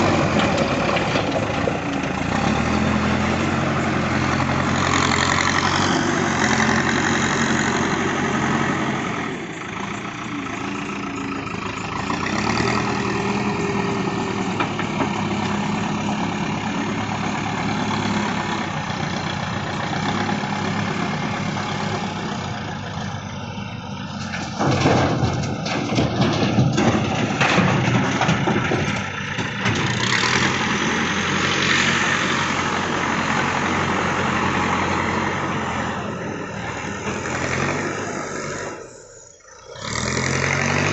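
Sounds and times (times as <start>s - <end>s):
knocks and clatter: 0.0s - 2.8s, 12.0s - 16.6s, 24.1s - 30.8s
diesel engine running: 0.0s - 40.9s.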